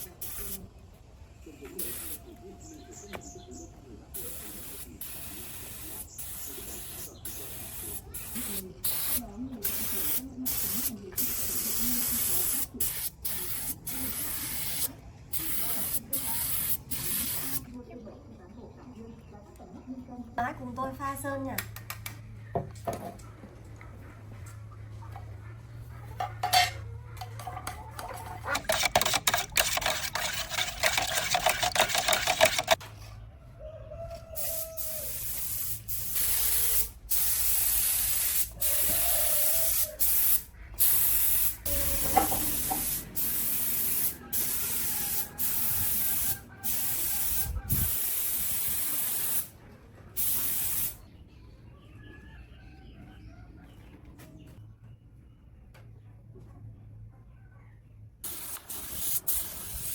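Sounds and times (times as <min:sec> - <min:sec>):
paint spray gun hissing: 0:04.2 - 0:17.6, 0:28.6 - 0:32.8, 0:34.5 - 0:39.0, 0:39.6 - 0:49.5, 0:50.2 - 0:51.0, 0:58.3 - 0:59.9
fast rattling: 0:28.4 - 0:32.8.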